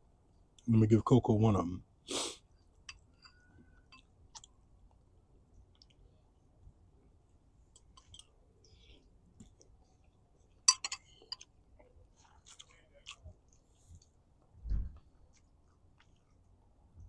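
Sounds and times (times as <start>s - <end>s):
dull low thump: 14.6s - 15.0s.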